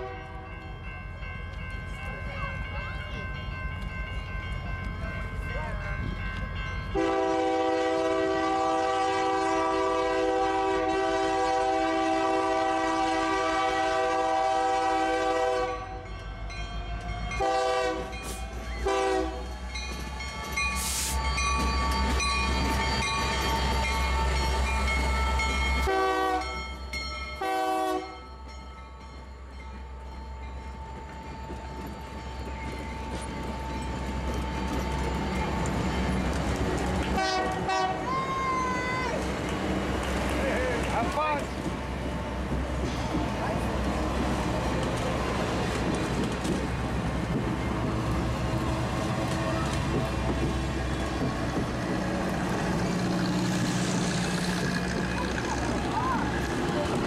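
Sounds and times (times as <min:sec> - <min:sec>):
rumble of passing train: 0:00.0 - 0:57.0
train horn blasts: 0:06.9 - 0:16.0, 0:17.4 - 0:19.4, 0:25.8 - 0:26.6, 0:27.4 - 0:28.2, 0:37.1 - 0:38.0.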